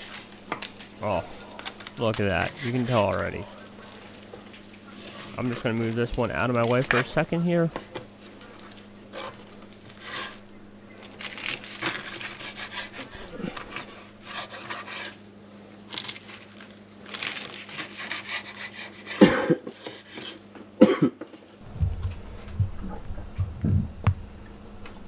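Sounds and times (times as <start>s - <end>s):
knife sawing through quesadilla: 2.2s - 3.6s, 9.1s - 10.5s, 11.2s - 15.3s, 17.2s - 20.5s.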